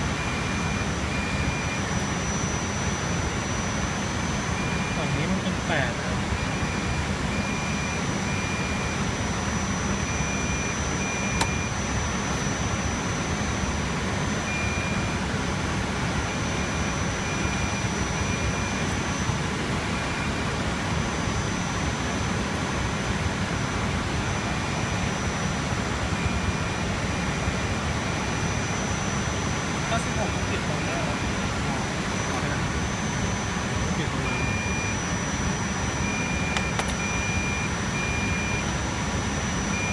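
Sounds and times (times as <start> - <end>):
thin high whine: 0.0 - 22.5, 23.5 - 39.9
sharp click: 36.5 - 37.0.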